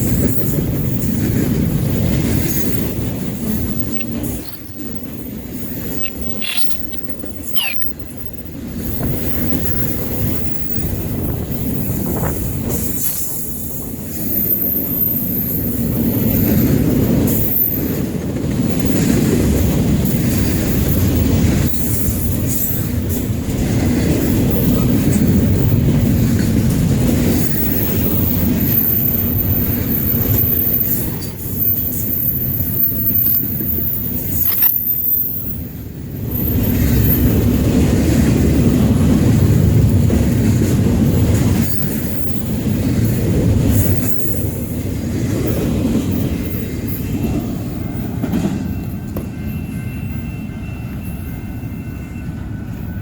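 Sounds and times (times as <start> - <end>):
train wheels rumbling on rails: 0.0 - 53.0
high-pitched wheel squeal: 3.6 - 8.0.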